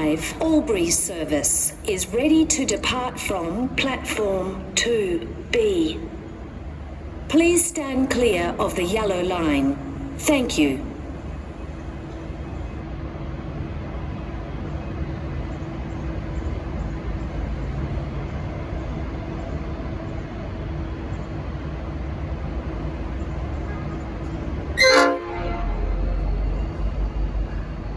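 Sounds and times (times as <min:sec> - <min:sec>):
locomotive engine drone: 0:22.5 - 0:27.9.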